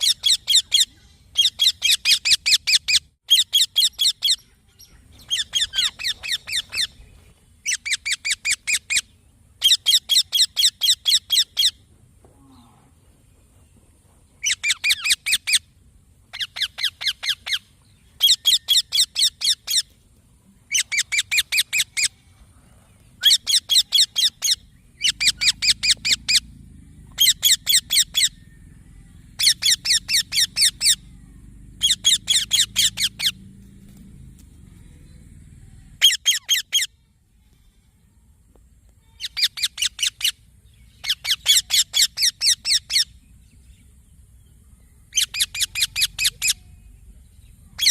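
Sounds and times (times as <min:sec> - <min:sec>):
parakeet shrill chattering: 0:00.0 - 0:04.5, 0:05.2 - 0:07.0, 0:23.2 - 0:26.4, 0:29.4 - 0:31.0, 0:31.8 - 0:33.4, 0:36.0 - 0:36.9, 0:39.2 - 0:40.4, 0:41.0 - 0:43.1, 0:45.1 - 0:46.6.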